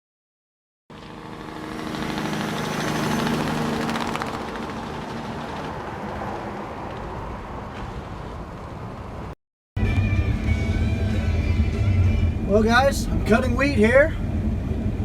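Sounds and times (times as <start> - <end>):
combine harvester running: 10.2 - 15.0.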